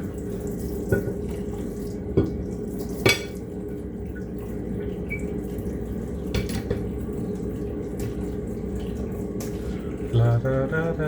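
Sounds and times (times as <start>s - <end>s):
plates and cutlery clinking in sink: 2.2s - 3.4s, 6.3s - 6.9s.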